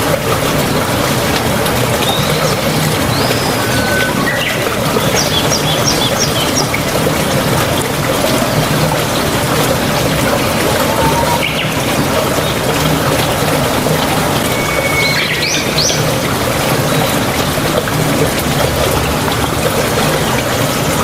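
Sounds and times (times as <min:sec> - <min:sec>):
steady rain: 0:00.0 - 0:21.0
birds chirping: 0:01.6 - 0:17.4.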